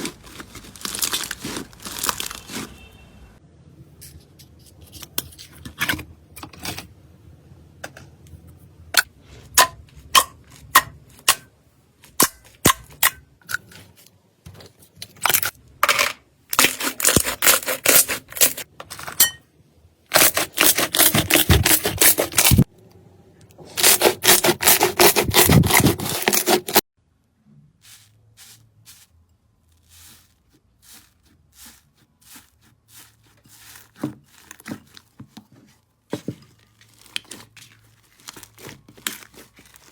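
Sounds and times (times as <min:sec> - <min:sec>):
slime crackling: 0:00.0 - 0:02.9, 0:27.8 - 0:35.2, 0:36.5 - 0:39.9.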